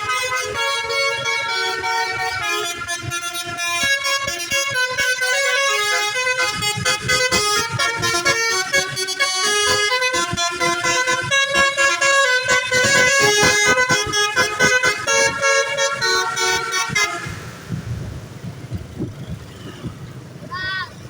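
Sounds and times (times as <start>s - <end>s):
bus horn playing a tune: 0.0s - 18.2s
low rumble: 17.0s - 20.5s.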